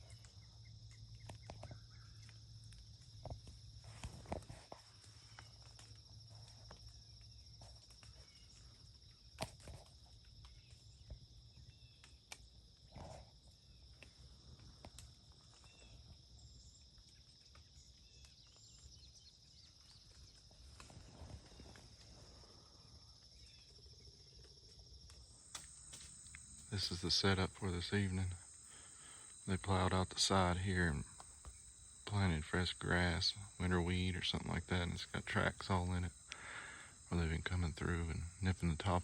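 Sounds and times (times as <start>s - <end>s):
small clicks and rustles: 0.0s - 26.7s
insect chorus trilling: 0.0s - 39.0s.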